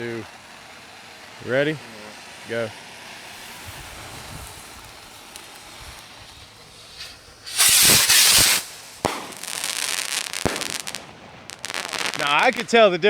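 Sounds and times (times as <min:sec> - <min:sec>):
firework rushing whoosh: 0:00.0 - 0:13.0
firework sharp bang: 0:02.4 - 0:12.8.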